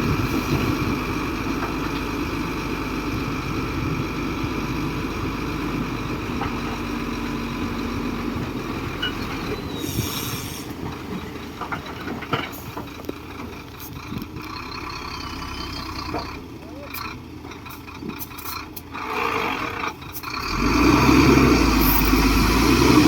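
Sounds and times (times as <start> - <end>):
diesel engine running: 0.0 - 23.0
steel tracks clattering and squealing: 8.4 - 16.4.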